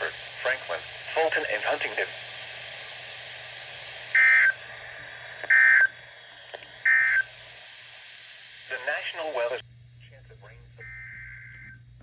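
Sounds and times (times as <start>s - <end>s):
buzzy two-tone digital squawks: 6.9s - 7.2s.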